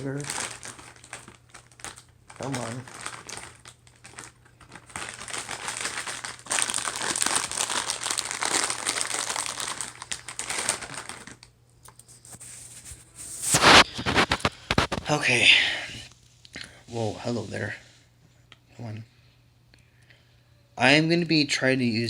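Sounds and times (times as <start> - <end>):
plastic bag crinkling: 0.0 - 15.4.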